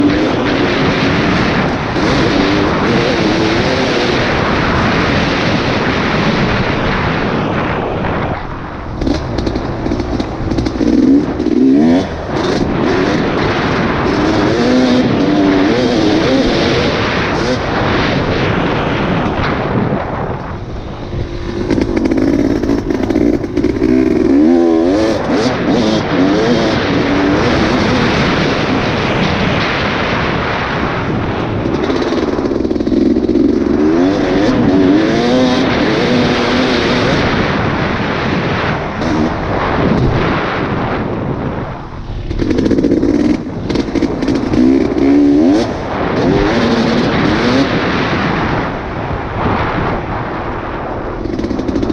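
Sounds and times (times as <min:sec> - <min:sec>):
off-road vehicle engine revving: 0:00.0 - 0:05.5, 0:09.0 - 0:17.7, 0:20.4 - 0:29.7, 0:31.0 - 0:37.8, 0:42.3 - 0:48.6
wind buffeting microphone: 0:00.0 - 0:51.9.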